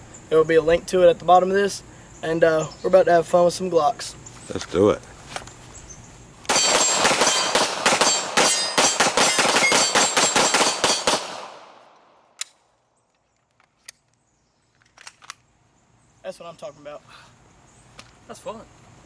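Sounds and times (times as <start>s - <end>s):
steel targets clanging: 6.5s - 11.1s
rapid pistol fire: 6.5s - 11.8s.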